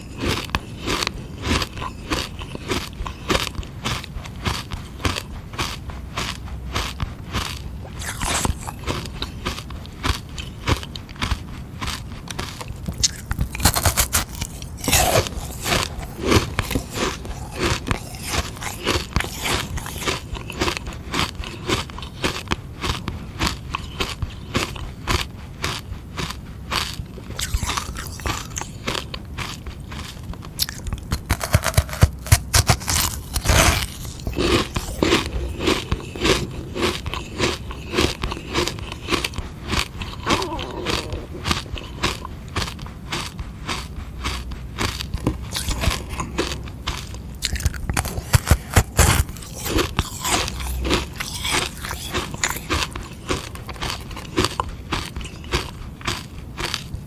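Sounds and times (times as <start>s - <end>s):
crunching ice: 0.0s - 57.0s.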